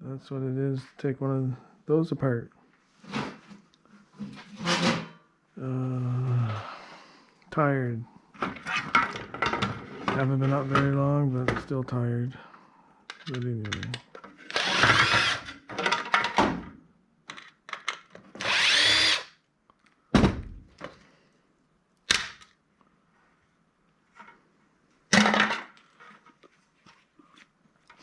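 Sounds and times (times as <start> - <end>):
power drill running: 14.5 - 15.5, 18.4 - 19.3
parts dropped onto scrap pile: 15.7 - 16.7, 25.1 - 26.3.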